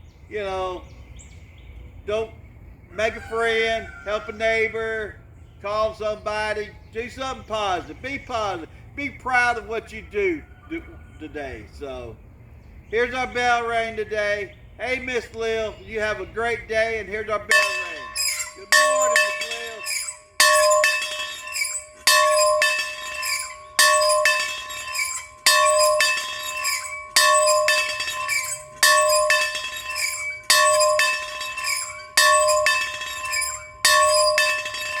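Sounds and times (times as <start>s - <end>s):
bell ringing: 17.5s - 35.0s
light clinks: 17.5s - 35.0s.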